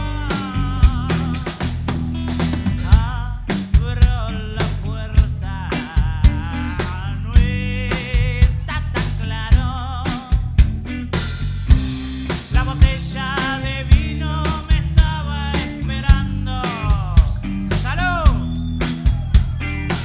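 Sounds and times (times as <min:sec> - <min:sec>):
rock band playing: 0:00.0 - 0:20.0
drum kit strikes: 0:09.6 - 0:20.0.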